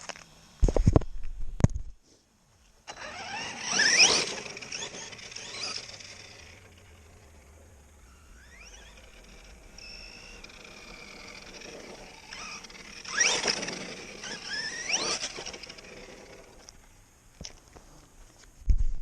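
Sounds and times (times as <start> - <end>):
electric motor whining: 2.9 - 16.9.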